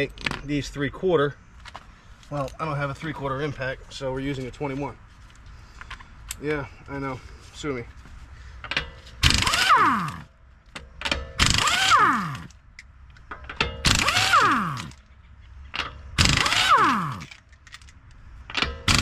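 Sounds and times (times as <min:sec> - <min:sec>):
impact wrench hammering: 0:08.7 - 0:10.3, 0:11.0 - 0:12.5, 0:13.4 - 0:15.0, 0:15.8 - 0:17.3, 0:18.5 - 0:19.0.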